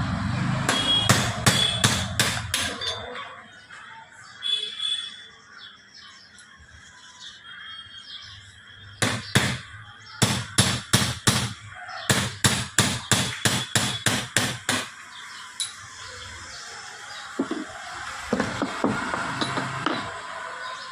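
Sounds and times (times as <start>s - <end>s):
hammer striking: 0.7s - 3.0s, 9.0s - 15.0s, 18.3s - 20.2s.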